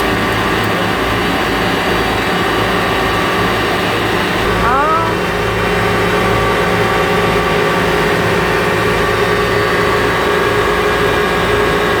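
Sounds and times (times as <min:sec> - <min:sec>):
electric pump motor humming: 0:00.0 - 0:12.0.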